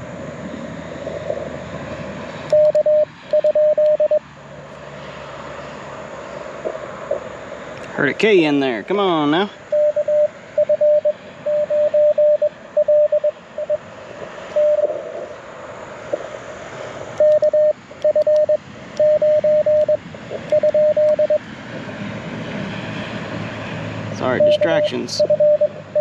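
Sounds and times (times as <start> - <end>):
morse code tones: 2.5 - 4.2, 9.7 - 13.8, 14.5 - 15.0, 17.2 - 21.4, 24.2 - 26.0.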